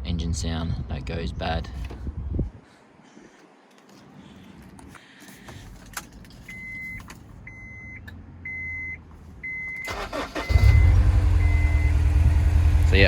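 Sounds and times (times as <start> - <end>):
car warning chime beeps: 6.5 - 12.6
car engine starting: 9.8 - 13.0
engine starter cranking: 9.8 - 13.0.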